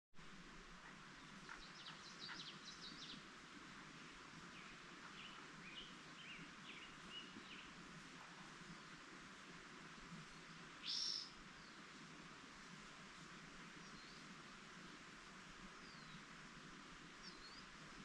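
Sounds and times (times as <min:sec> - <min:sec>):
steady background hiss: 0:00.2 - 0:18.0
small birds chirping: 0:00.8 - 0:09.2, 0:10.0 - 0:12.0, 0:13.7 - 0:15.0, 0:15.8 - 0:16.3, 0:17.1 - 0:18.0.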